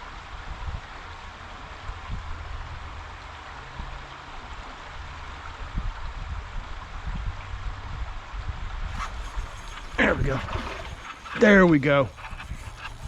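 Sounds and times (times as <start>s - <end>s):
creek rushing: 8.9s - 13.0s.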